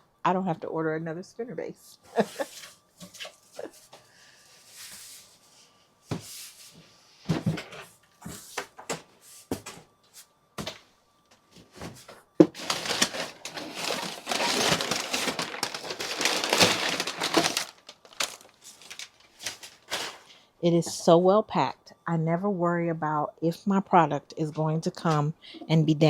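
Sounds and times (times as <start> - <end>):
packing material crinkling: 12.4 - 20.3.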